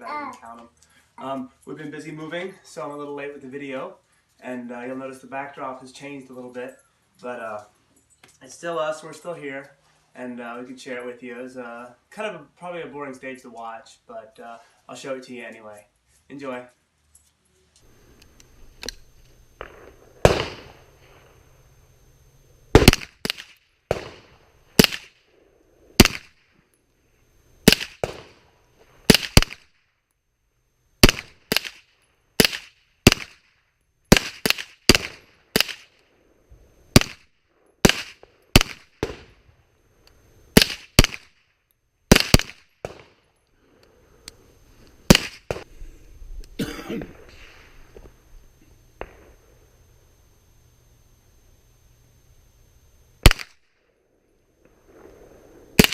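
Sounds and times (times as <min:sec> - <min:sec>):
gunshots: 0:19.6 - 0:21.4, 0:22.7 - 0:25.3, 0:25.9 - 0:26.4, 0:27.6 - 0:29.8, 0:31.0 - 0:33.5, 0:34.1 - 0:36.0, 0:36.9 - 0:39.4, 0:40.5 - 0:41.4, 0:42.1 - 0:43.2, 0:45.1 - 0:45.7, 0:49.0 - 0:49.4, 0:53.2 - 0:53.6, 0:54.8 - 0:55.9.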